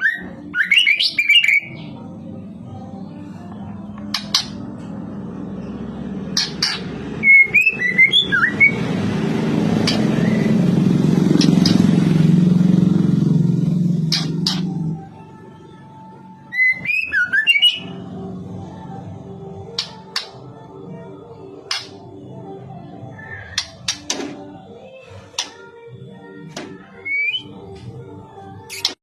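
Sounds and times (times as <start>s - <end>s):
bird whistled calls and clicks: 21.7s - 22.0s, 27.0s - 27.5s, 28.7s - 29.0s.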